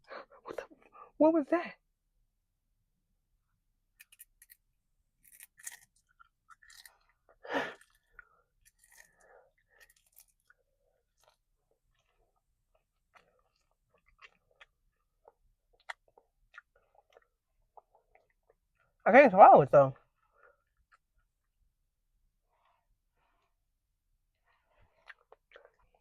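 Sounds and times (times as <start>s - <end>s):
chewing and crunching: 4.0s - 19.0s, 20.0s - 21.7s, 24.3s - 26.0s.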